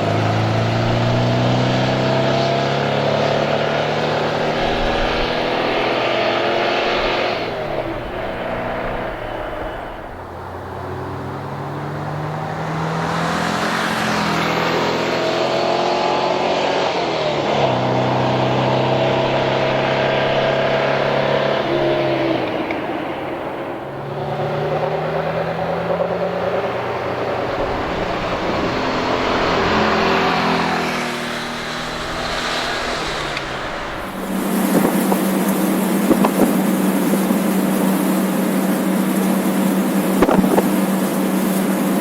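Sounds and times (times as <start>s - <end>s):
car engine running: 0.0s - 42.0s.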